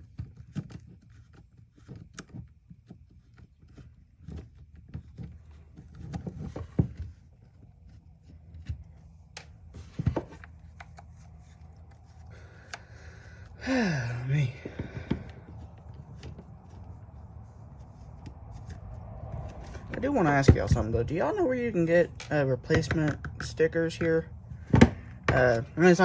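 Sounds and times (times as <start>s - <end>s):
plastic tool housing handled: 14.6s - 17.0s, 22.1s - 25.7s.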